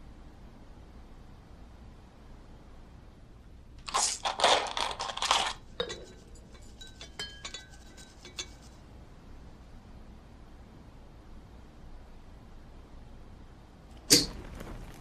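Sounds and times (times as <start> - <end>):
light ringing clinks: 5.8 - 8.7.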